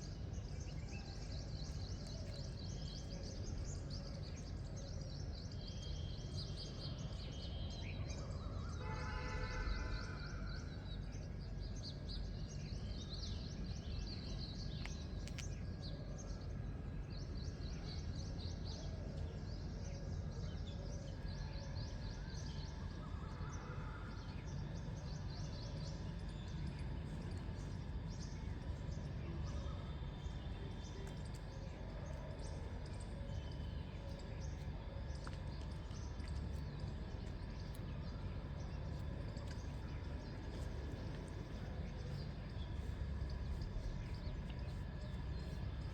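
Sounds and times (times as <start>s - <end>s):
small birds chirping: 0.0s - 8.4s, 24.4s - 45.9s
low background rumble: 0.0s - 8.9s, 9.7s - 45.9s.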